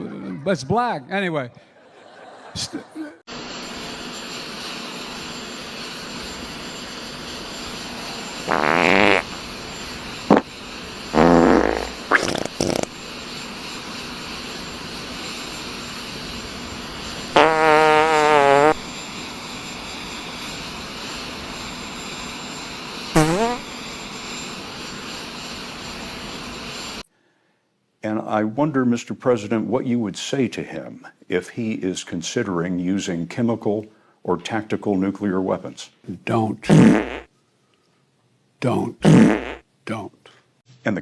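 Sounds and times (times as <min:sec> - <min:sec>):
steady background hiss: 0:03.7 - 0:26.4, 0:27.6 - 0:41.0
fart sounds: 0:08.5 - 0:09.3, 0:11.2 - 0:12.9, 0:17.4 - 0:18.8, 0:23.2 - 0:23.6, 0:36.7 - 0:37.3, 0:39.0 - 0:39.6.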